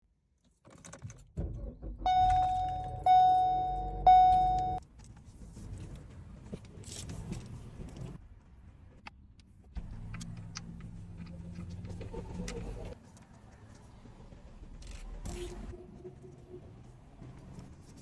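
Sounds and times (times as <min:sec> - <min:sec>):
car warning chime: 0:02.1 - 0:04.8.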